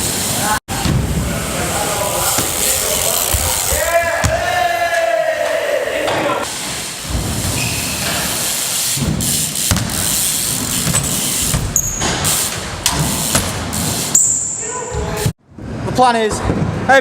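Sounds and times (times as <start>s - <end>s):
bike tyres rolling hiss: 0.0s - 14.7s
bike landing knocks: 2.1s - 4.6s, 9.0s - 14.1s.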